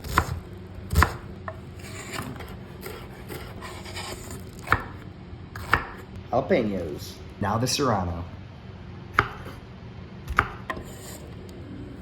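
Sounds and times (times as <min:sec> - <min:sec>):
knife cutting on wooden board: 0:00.0 - 0:05.0, 0:05.6 - 0:06.0, 0:10.3 - 0:11.3.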